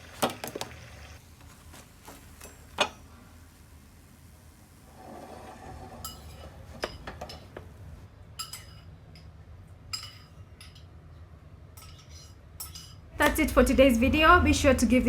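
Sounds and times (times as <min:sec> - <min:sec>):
cutlery and dishes clinking: 0:06.0 - 0:07.6, 0:08.4 - 0:09.3, 0:09.9 - 0:10.9, 0:11.8 - 0:13.0.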